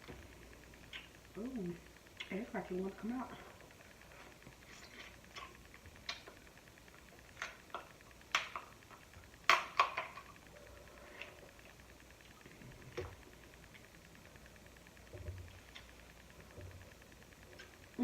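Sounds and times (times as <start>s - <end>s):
crab shells cracking: 5.1s - 10.5s.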